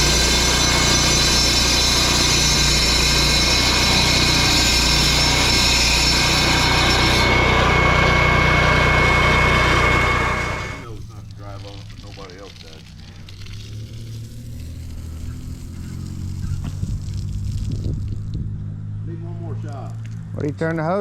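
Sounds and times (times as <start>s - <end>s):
saw cutting concrete hiss: 0.0s - 16.7s
concrete saw engine drone: 0.0s - 21.0s.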